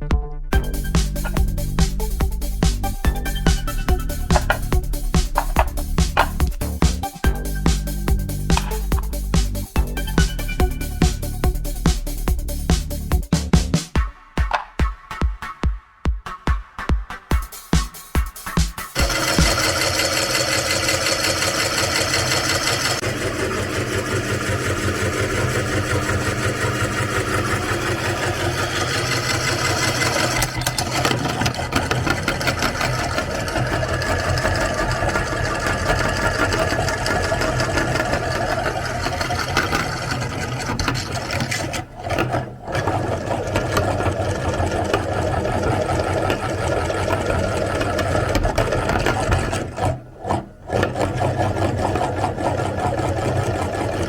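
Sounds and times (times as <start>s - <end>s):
electric meat grinder motor: 19.0s - 54.0s.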